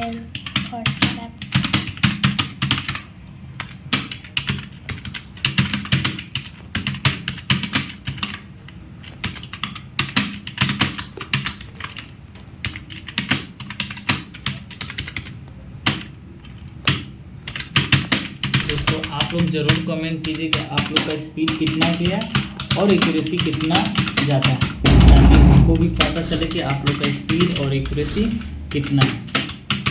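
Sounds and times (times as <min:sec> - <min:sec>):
fast typing on keyboard: 0:00.0 - 0:16.2, 0:16.9 - 0:19.1.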